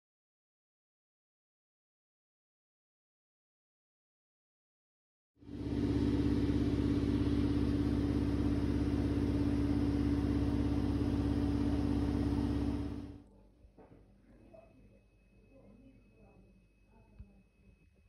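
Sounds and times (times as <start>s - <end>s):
engine running with low hum: 5.4s - 13.2s.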